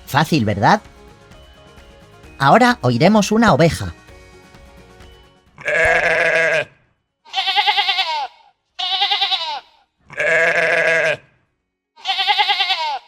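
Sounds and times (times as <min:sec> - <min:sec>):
sheep bleating: 0:05.6 - 0:11.3, 0:12.0 - 0:13.0.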